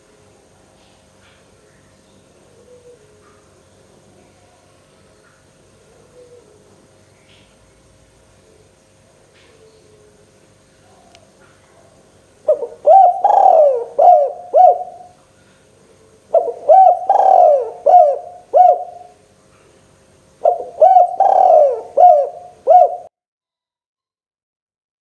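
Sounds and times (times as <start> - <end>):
dove cooing: 2.4 - 3.5, 5.8 - 7.0, 9.4 - 15.2, 15.9 - 19.2, 20.4 - 23.1.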